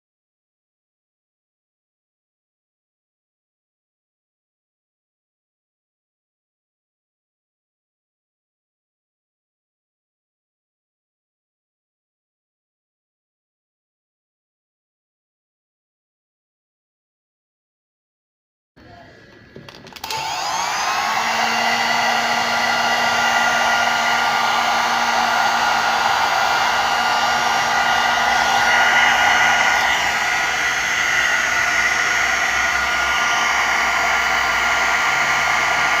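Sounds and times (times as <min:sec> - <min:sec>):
hair dryer motor whining: 0:19.9 - 0:36.0
hair dryer air rushing: 0:20.0 - 0:36.0.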